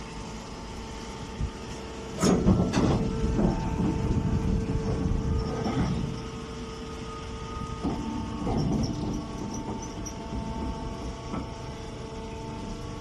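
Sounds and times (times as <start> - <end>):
baling press humming: 0.3 - 13.0
machine knocks: 2.2 - 4.2.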